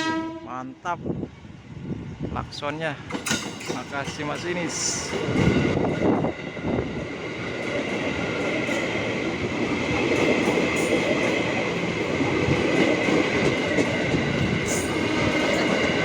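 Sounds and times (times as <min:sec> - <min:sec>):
wheels rumbling on rail: 0:01.0 - 0:16.0
clickety-clack over rail joints: 0:03.0 - 0:16.0
high-pitched train whine: 0:04.6 - 0:16.0.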